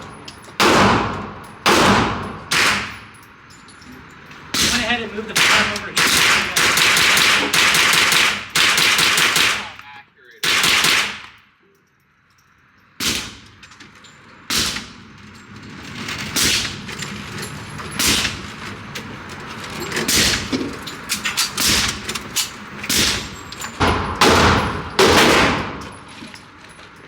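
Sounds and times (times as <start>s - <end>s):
loud gunshots: 0.6s - 3.0s, 4.6s - 9.8s, 10.4s - 11.3s, 22.9s - 25.8s.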